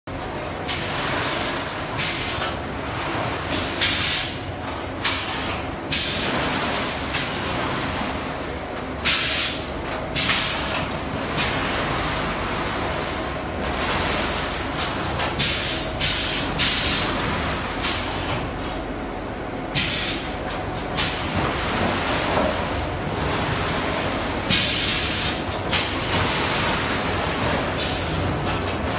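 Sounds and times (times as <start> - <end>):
pneumatic hiss: 9.0 - 9.6, 10.2 - 11.8, 19.7 - 20.3.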